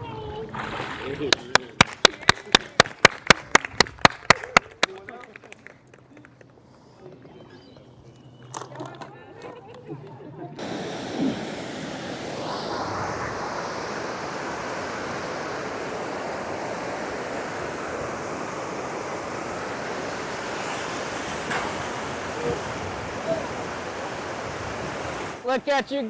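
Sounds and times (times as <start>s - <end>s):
river water rushing: 10.6s - 25.5s.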